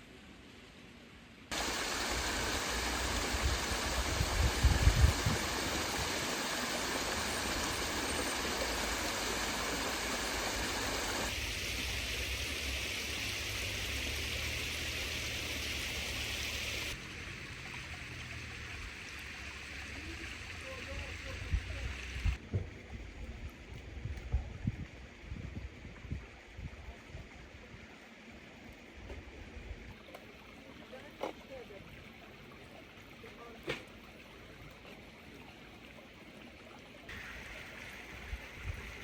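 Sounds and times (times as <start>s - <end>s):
running water rushing: 1.5s - 22.5s, 29.9s - 39.0s.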